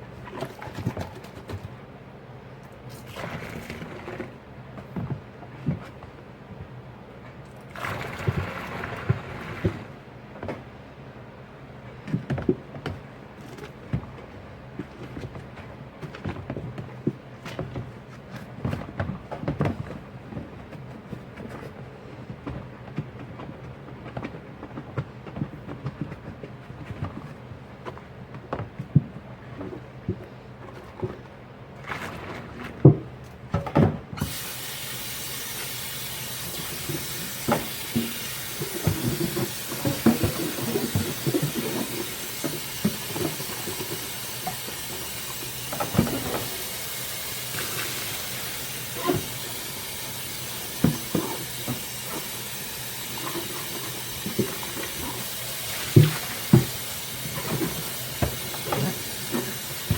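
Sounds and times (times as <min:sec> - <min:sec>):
tap water running: 0:02.7 - 0:04.4, 0:07.5 - 0:10.0, 0:34.2 - 0:59.9.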